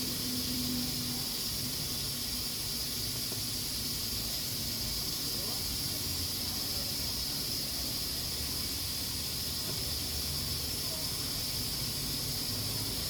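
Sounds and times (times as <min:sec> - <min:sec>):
pressure cooker hissing steam: 0:00.0 - 0:13.0.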